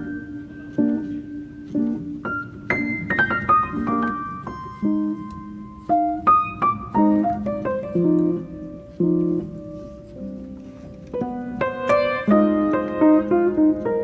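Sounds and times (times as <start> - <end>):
piano notes over chords: 0.0 - 14.0.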